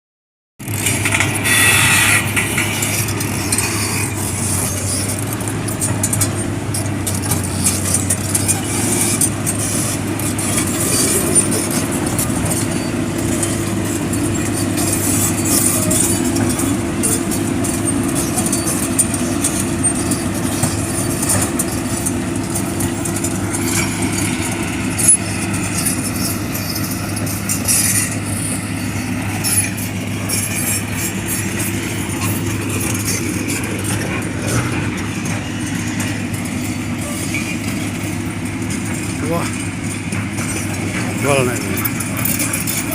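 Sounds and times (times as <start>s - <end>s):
diesel engine running: 0.6s - 42.9s.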